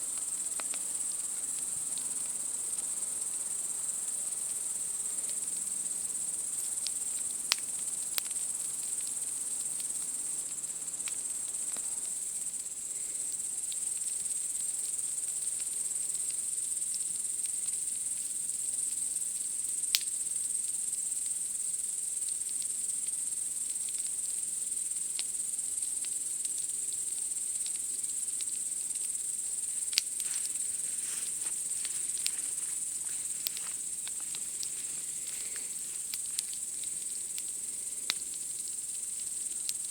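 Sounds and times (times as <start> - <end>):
night insects chirping: 0.0 - 39.9
campfire popping and crackling: 0.1 - 3.0, 6.5 - 12.3, 25.0 - 39.9.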